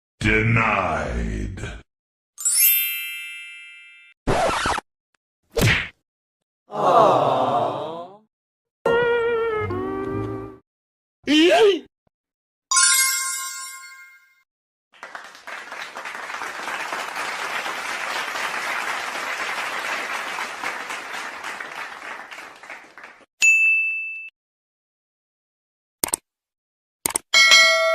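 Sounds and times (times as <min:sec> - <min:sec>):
applause: 0:15.0 - 0:23.3
bell-like ding: 0:23.4 - 0:24.3, 0:27.4 - 0:27.9
short high ding: 0:23.4 - 0:24.3, 0:27.4 - 0:27.9.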